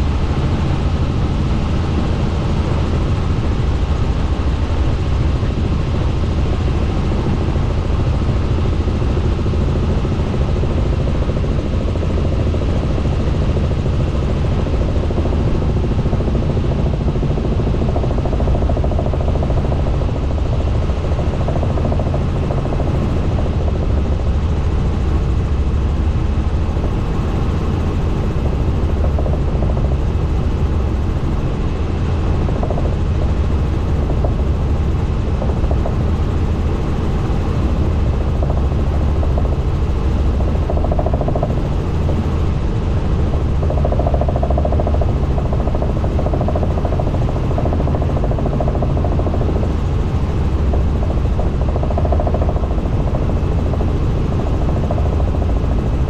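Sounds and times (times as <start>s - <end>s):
helicopter rotor drone: 0.0s - 56.0s.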